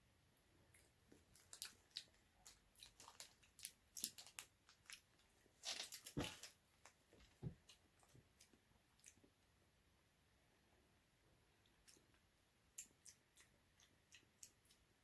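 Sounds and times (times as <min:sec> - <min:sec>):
hard candy crunching in mouth: 0:01.3 - 0:06.5.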